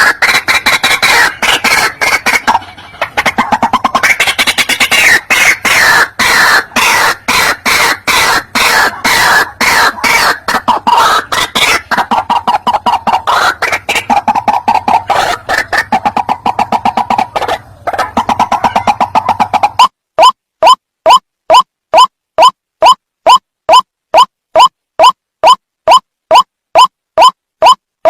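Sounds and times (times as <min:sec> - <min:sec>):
waterhen calling harshly: 0:00.0 - 0:19.9.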